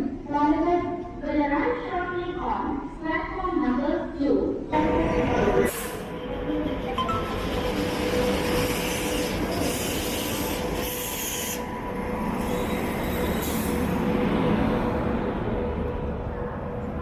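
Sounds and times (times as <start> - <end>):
train running on rails: 4.5 - 17.0
steel wheels whining: 4.9 - 14.5.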